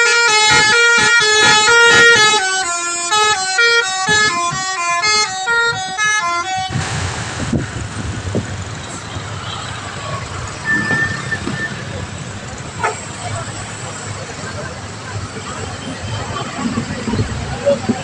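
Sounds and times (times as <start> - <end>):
multi-tone bus horn tune: 0.0 - 7.0, 12.8 - 13.2
road and engine noise: 0.0 - 18.0.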